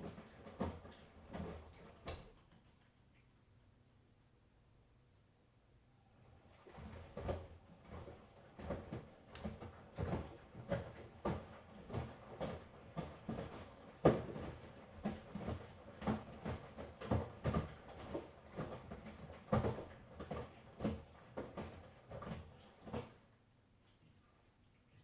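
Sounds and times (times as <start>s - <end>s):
laundry thudding in washing machine: 0.0s - 2.4s, 6.4s - 23.3s.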